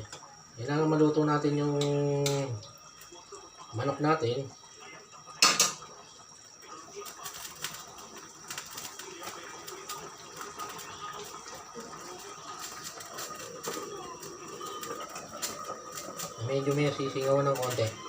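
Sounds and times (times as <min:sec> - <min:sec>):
pot simmering with crackling: 0:00.0 - 0:18.0
metal cookware clank: 0:05.4 - 0:05.9.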